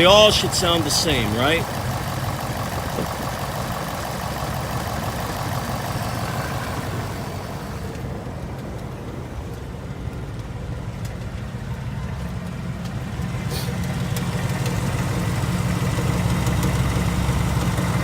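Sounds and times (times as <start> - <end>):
car engine idling: 0.0 - 18.0
clattery engine rattle: 0.0 - 18.0
faint engine ticks: 0.0 - 18.0.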